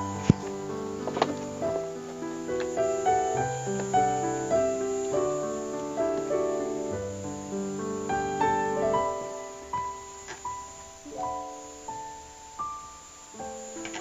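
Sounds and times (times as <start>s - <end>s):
piano music: 0.0s - 14.0s.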